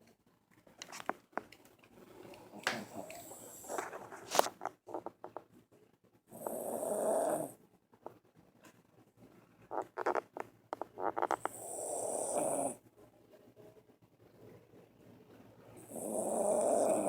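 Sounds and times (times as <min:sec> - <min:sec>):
dog snoring: 0:02.5 - 0:03.9, 0:06.3 - 0:07.6, 0:11.0 - 0:12.8, 0:15.8 - 0:17.0.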